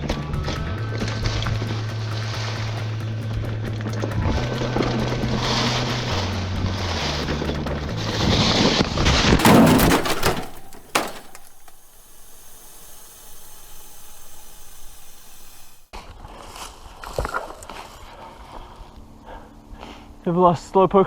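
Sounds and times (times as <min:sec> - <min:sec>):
mountain bike rushing noise: 0:01.0 - 0:15.9
steady hiss: 0:10.2 - 0:15.9.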